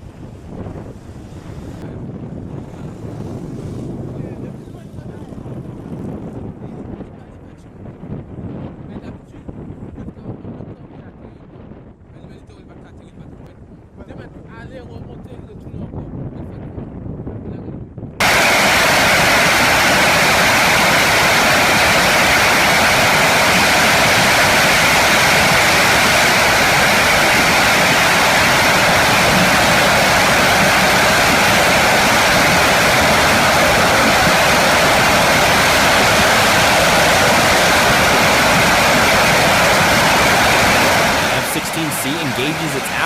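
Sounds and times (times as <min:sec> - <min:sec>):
jet engine rushing: 0:18.2 - 0:43.0.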